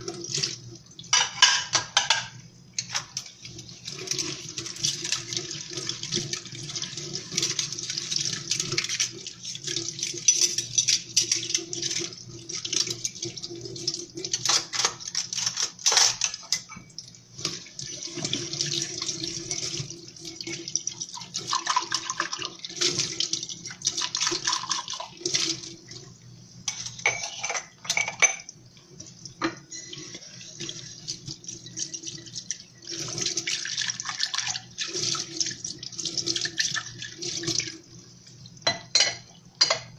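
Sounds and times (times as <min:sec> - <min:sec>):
tap water running and splashing: 0:00.0 - 0:02.2, 0:02.8 - 0:39.0
dishes and cutlery clinking: 0:01.1 - 0:03.3, 0:14.4 - 0:16.9, 0:26.7 - 0:28.5, 0:29.4 - 0:30.4, 0:38.6 - 0:39.9.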